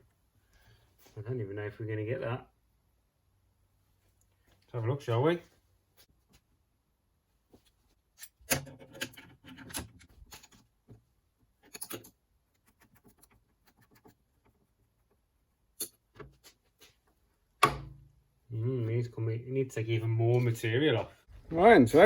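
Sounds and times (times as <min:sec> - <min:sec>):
metal tools clicking and clinking: 0:11.6 - 0:12.2, 0:15.8 - 0:16.0.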